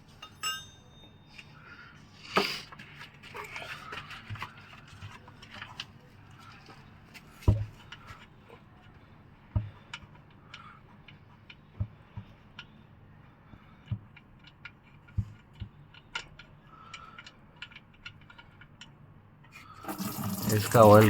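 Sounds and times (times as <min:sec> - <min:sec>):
oil dripping into container: 0:19.7 - 0:21.0.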